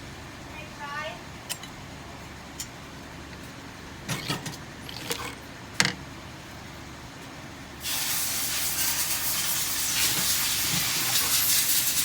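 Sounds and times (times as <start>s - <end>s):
steady hiss: 7.8s - 12.0s.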